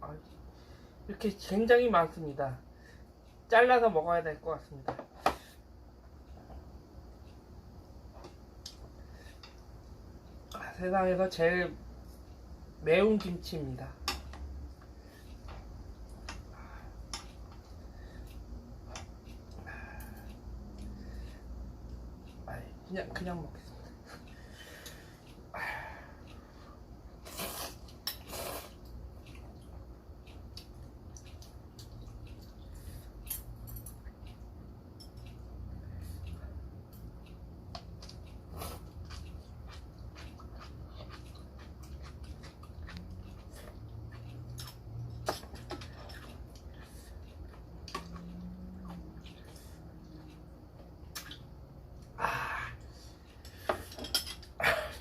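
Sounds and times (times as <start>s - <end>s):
wet chewing clicks and smacks: 28.7s - 35.6s, 36.2s - 52.2s.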